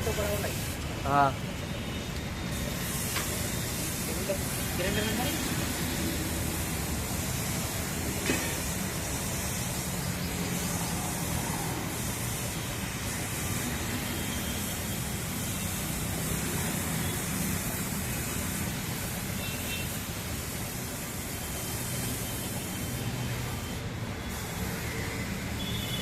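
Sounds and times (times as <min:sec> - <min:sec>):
machine humming and hissing: 0:01.6 - 0:26.0.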